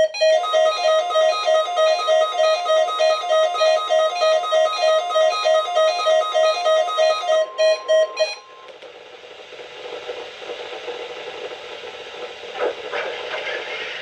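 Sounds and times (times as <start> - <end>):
electronic beeps: 0.0 - 8.7
radio static hiss: 8.7 - 14.0.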